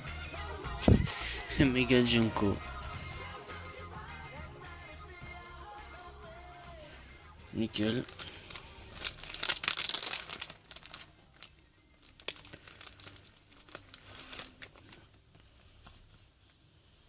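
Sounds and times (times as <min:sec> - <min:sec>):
foil wrapper crinkling and tearing: 0:07.7 - 0:15.5.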